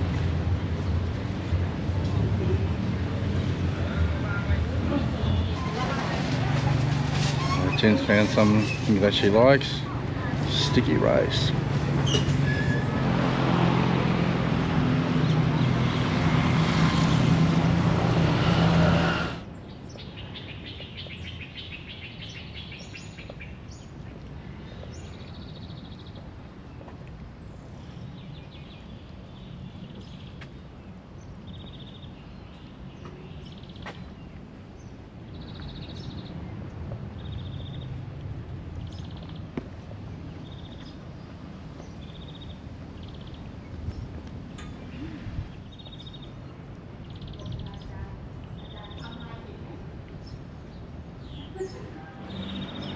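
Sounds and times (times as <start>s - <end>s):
loud traffic noise: 0.0s - 19.6s, 50.9s - 52.9s
birds chirping: 27.4s - 36.4s, 37.1s - 52.9s.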